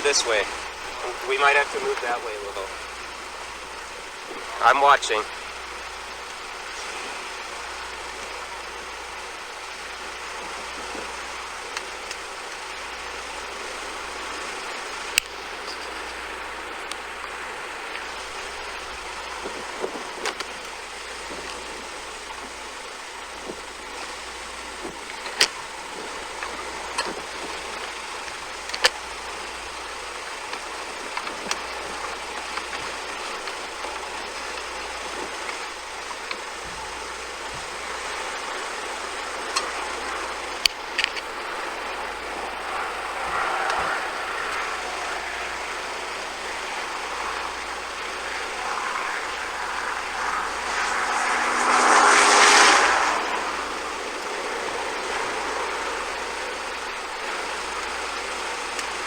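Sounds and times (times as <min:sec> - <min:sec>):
tornado roar: 0:00.0 - 0:59.0
wind: 0:00.0 - 0:59.0
sharp clicks and ticks: 0:15.1 - 0:16.2.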